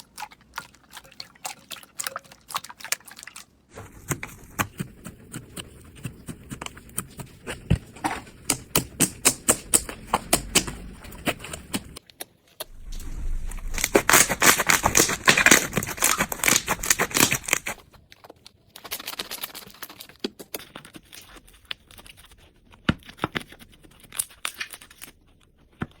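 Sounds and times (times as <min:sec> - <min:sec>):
sticky pops and crackling clicks: 0:03.8 - 0:17.8
slime squished by hand: 0:07.1 - 0:12.0, 0:12.7 - 0:17.8.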